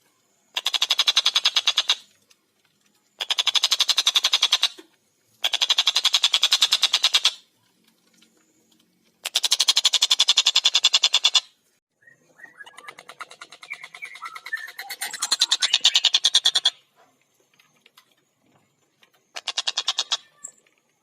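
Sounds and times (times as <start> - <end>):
kingfisher rattling call: 0.6 - 2.1, 12.5 - 16.8, 19.3 - 20.4.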